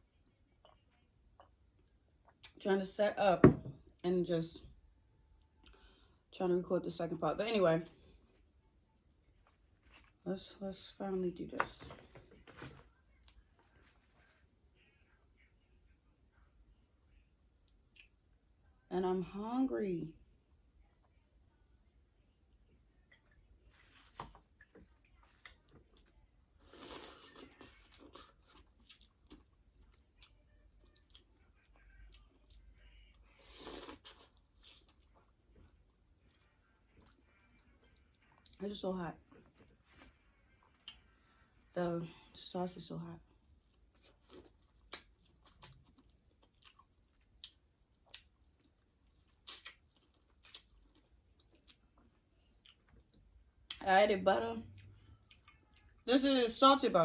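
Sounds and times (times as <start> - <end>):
crunching and chewing: 23.1 - 38.6, 43.3 - 53.8, 54.7 - 56.0.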